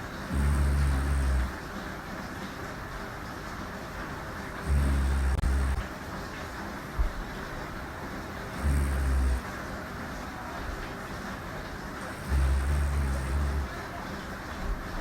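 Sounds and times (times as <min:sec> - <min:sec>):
woman snoring: 0:00.0 - 0:01.6, 0:04.6 - 0:05.9, 0:08.5 - 0:09.5, 0:12.0 - 0:13.7
background hiss: 0:00.0 - 0:15.0.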